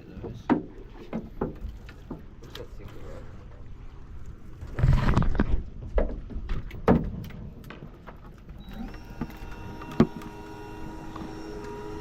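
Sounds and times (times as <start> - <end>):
small electric motor whining: 8.6 - 12.0.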